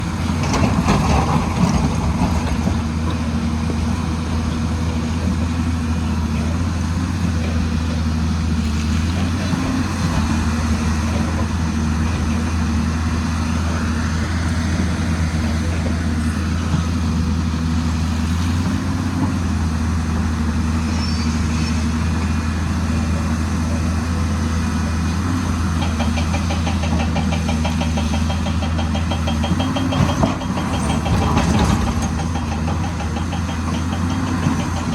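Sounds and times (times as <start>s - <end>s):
excavator diesel engine running: 0.0s - 34.9s.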